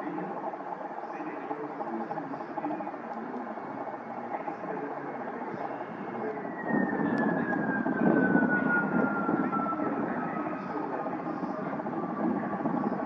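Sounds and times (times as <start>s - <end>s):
high whine falling in pitch: 0.0s - 13.0s
aircraft passing by: 4.5s - 13.0s.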